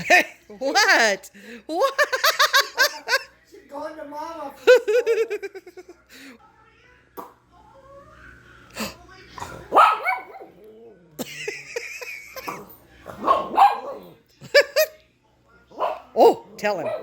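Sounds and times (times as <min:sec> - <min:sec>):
dog yipping and barking: 0:09.7 - 0:10.6, 0:13.2 - 0:14.1.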